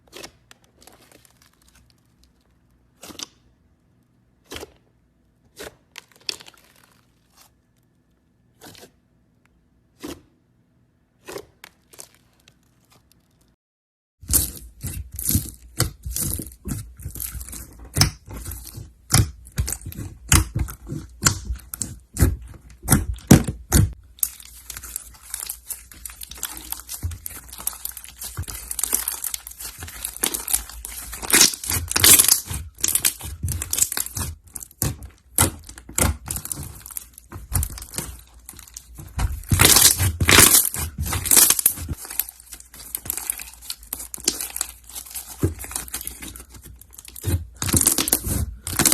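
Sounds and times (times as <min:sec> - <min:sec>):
slime crackling and popping: 0:00.7 - 0:03.3, 0:06.0 - 0:07.6, 0:14.3 - 0:48.9.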